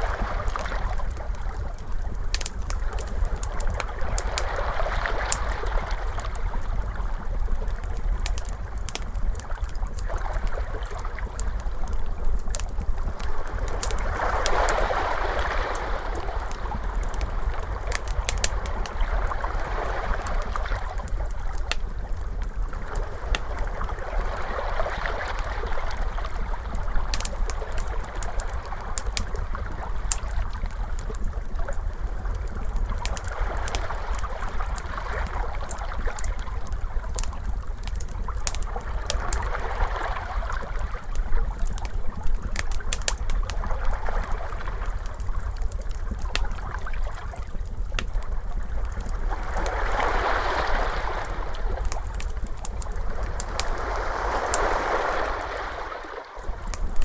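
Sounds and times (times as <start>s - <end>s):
wood fire crackling and popping: 0.0s - 55.5s, 56.4s - 57.0s
ocean waves washing: 13.4s - 21.1s, 49.1s - 57.0s
steady low rumble: 44.9s - 57.0s.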